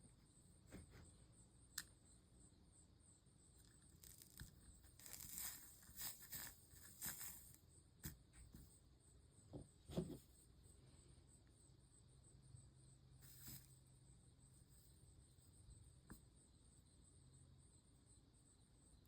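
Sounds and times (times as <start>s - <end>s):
small sharp clicks: 1.7s - 2.0s
soldering flux crackling and sizzling: 3.6s - 8.7s, 13.2s - 13.8s.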